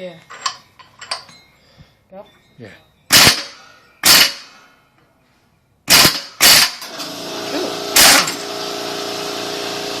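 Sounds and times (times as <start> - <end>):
air compressor running: 3.1 - 4.4, 5.9 - 10.0
air impact wrench bursts: 3.1 - 4.6, 5.9 - 10.0.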